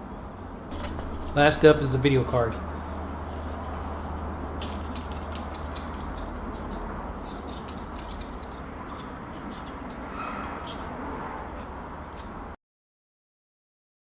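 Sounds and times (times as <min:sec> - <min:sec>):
steady low hum: 0:00.0 - 0:12.6
hands handling computer parts: 0:00.7 - 0:01.5, 0:03.3 - 0:12.4.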